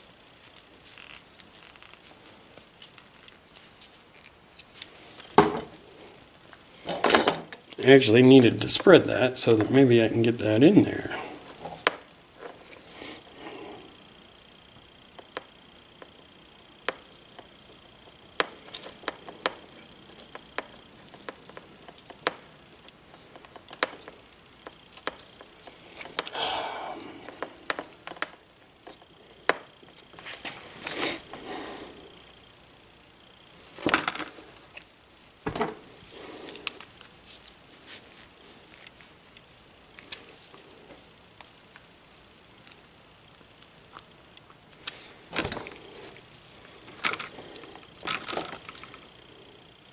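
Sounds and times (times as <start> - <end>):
faint high whine: 0.0 - 49.9
hand tools clicking and tapping: 18.4 - 26.4.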